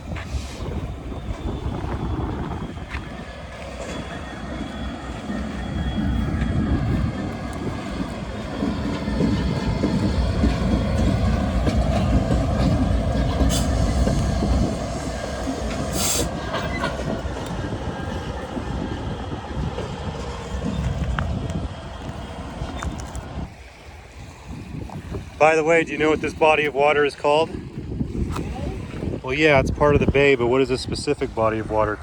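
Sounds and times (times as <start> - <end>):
wheel squeal on rails: 0.0 - 21.4
train rumbling on tracks: 0.0 - 32.0.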